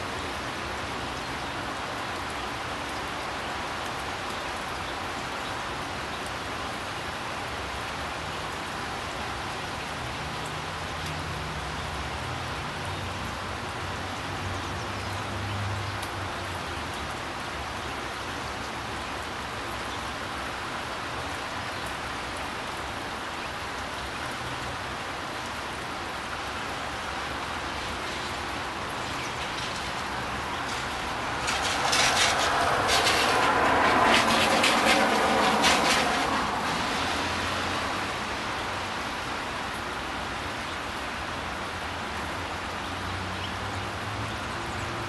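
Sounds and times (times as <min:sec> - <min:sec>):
steady rain falling: 0:00.0 - 0:45.0
loud rush with crackling: 0:23.8 - 0:42.1.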